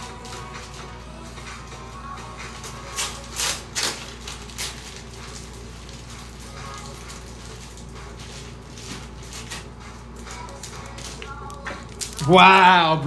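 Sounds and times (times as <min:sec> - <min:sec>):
plastic crinkling and rustling: 0:02.2 - 0:12.4.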